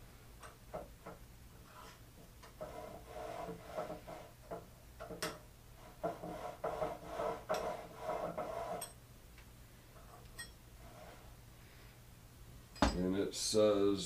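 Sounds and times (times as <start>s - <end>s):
metal scraping strokes: 1.6s - 4.4s, 5.8s - 9.0s, 10.8s - 11.4s.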